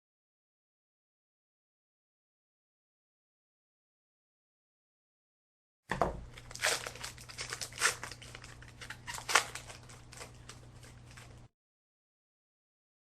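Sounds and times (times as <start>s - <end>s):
cards being handled: 6.3s - 11.5s
wrapper tearing and crinkling: 6.3s - 11.5s.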